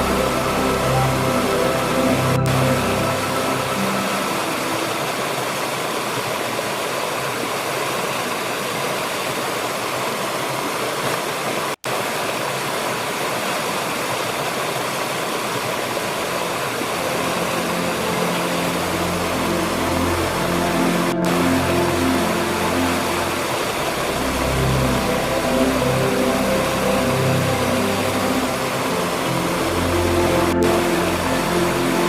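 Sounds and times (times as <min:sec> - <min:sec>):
low steady tones: 0:00.0 - 0:06.0, 0:16.2 - 0:32.0
rushing water: 0:00.0 - 0:32.0.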